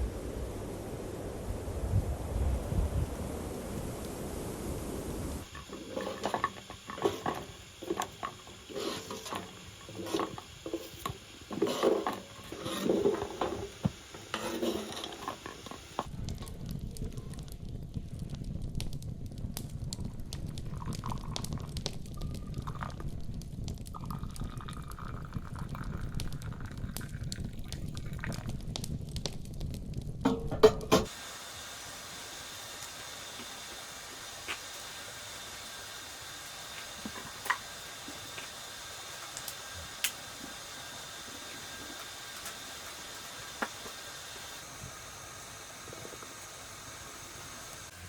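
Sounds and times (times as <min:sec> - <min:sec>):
low rushing noise: 0:00.0 - 0:05.5
cookware clinking and knocking: 0:30.3 - 0:31.1.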